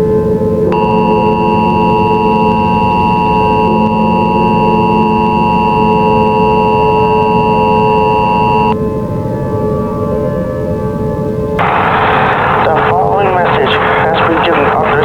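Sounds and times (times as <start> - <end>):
two-tone alert beep: 0.8 - 8.8.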